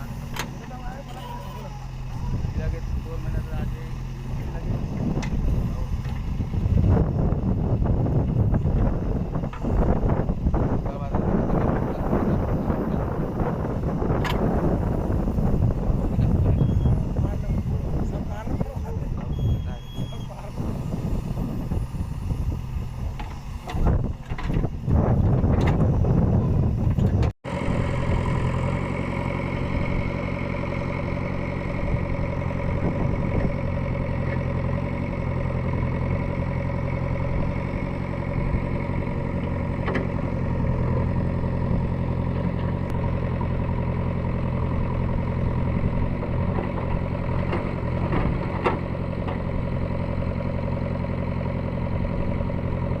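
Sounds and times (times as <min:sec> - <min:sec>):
diesel engine idling: 0:00.0 - 0:53.0
loud wind-like rush: 0:02.1 - 0:19.3, 0:20.4 - 0:28.3
faint engine knocks: 0:04.4 - 0:06.6, 0:23.1 - 0:26.0, 0:46.3 - 0:49.6.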